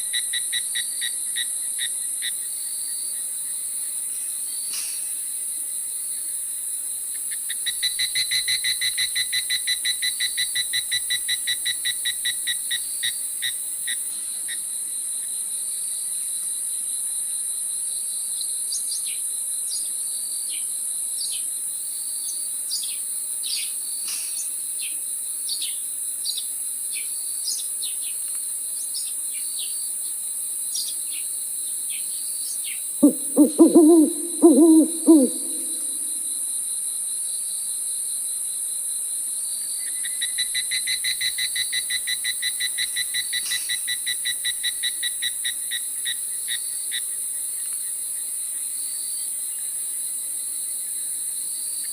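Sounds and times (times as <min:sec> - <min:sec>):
cricket steady tone: 0:00.0 - 0:51.9
insects chorus with high hiss: 0:00.0 - 0:51.9
short falling chirps: 0:33.0 - 0:36.2
owl hooting: 0:33.0 - 0:36.3.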